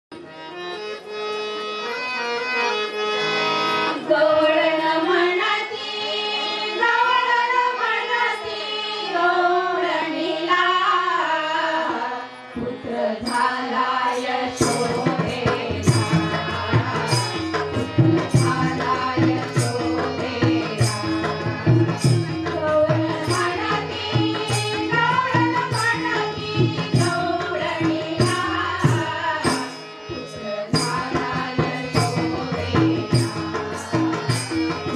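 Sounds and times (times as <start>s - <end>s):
women singing folk song: 4.0s - 34.9s
held accompaniment: 11.4s - 34.9s
percussion beat: 12.6s - 34.9s.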